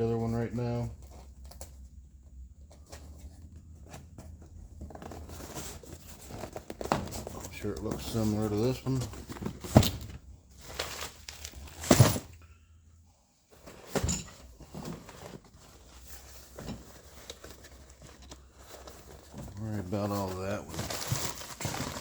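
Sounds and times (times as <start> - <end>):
packing material rustling: 4.8 - 12.2, 15.0 - 22.0.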